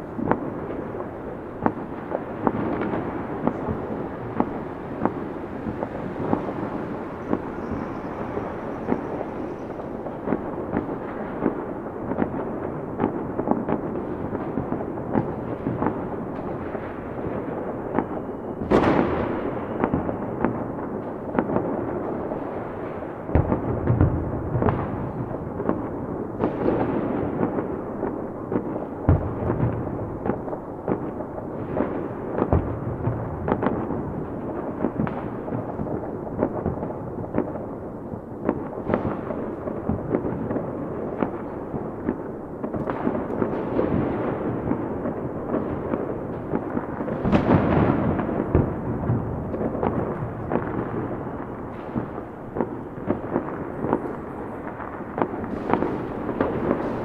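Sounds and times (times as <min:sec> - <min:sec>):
deep firework booms: 0:00.0 - 0:57.0
fireworks crackling and popping: 0:00.0 - 0:57.0
loud firework bang: 0:18.6 - 0:20.2.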